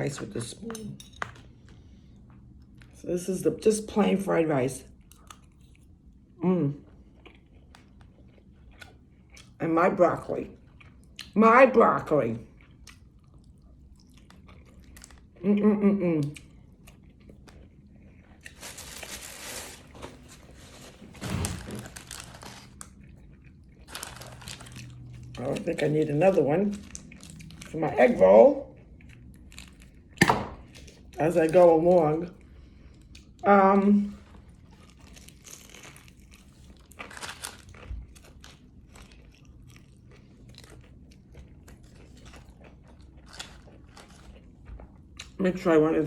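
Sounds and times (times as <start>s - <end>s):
packaging crinkling and rustling: 18.5s - 23.0s, 23.8s - 25.6s
person biting and chewing food: 29.0s - 31.2s, 34.4s - 45.3s.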